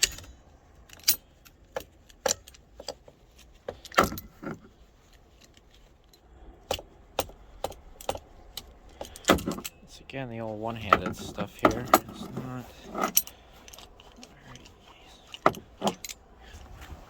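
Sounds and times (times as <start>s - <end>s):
metallic clicks and clinks: 0.0s - 4.3s, 10.8s - 16.3s.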